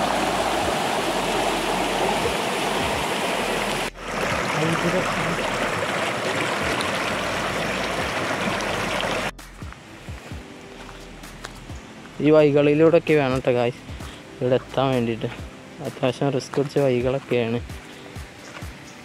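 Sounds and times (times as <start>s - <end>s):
stream rushing over rocks: 0.0s - 9.4s.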